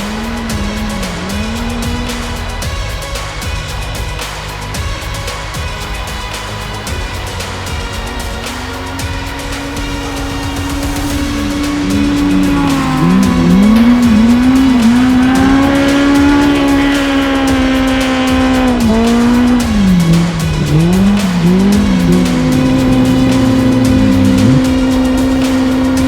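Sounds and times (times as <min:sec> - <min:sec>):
engine at steady high pitch: 0:00.0 - 0:26.0
engine revving up and down: 0:00.0 - 0:26.0.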